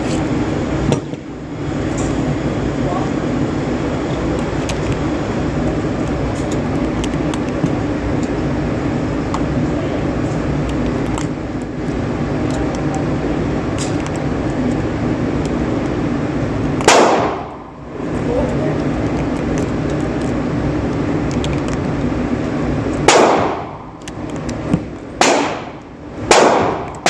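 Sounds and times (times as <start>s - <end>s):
rumbling background noise: 0.0s - 27.0s
loud pistol shot: 16.8s - 17.6s, 23.0s - 23.8s, 25.2s - 27.0s.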